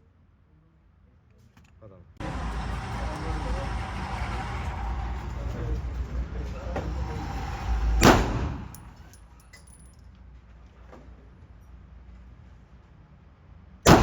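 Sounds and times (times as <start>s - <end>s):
low rumble: 2.2s - 9.2s
gunshot: 8.0s - 8.7s.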